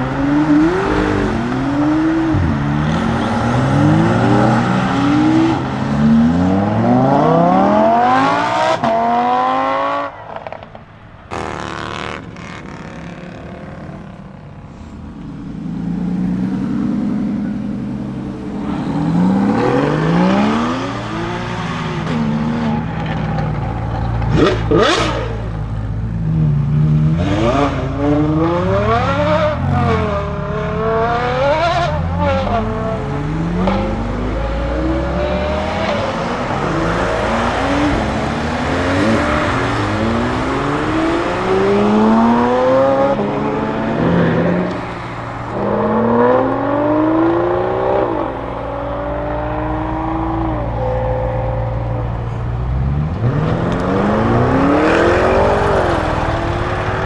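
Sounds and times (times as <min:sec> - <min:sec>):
engine revving: 0:00.0 - 0:14.1, 0:15.3 - 0:57.0
sharp exhaust crack: 0:51.8 - 0:57.0.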